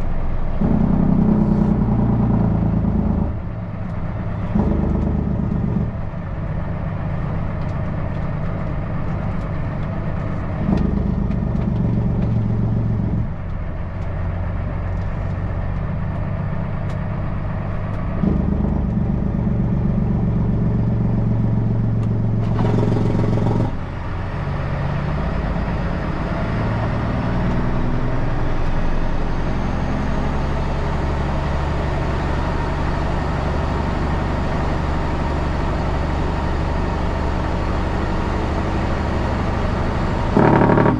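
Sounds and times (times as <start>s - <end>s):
truck engine running: 0.0s - 40.9s.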